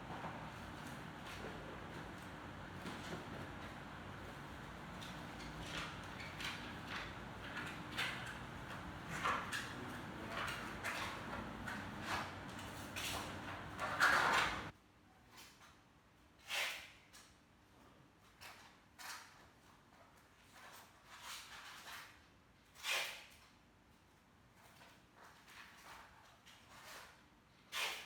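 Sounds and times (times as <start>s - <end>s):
objects scraping and rustling: 0.0s - 14.7s
steady background hum: 0.0s - 14.7s.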